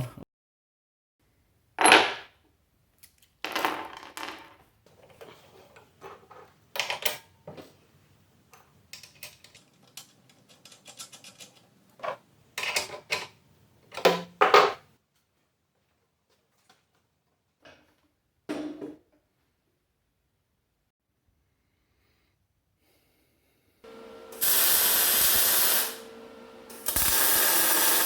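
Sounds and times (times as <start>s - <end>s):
metal tools clanking on workbench: 9.0s - 13.4s.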